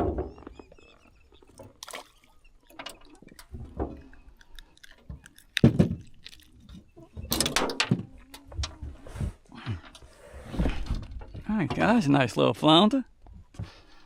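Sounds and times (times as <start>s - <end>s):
knocks and thumps: 5.6s - 6.1s.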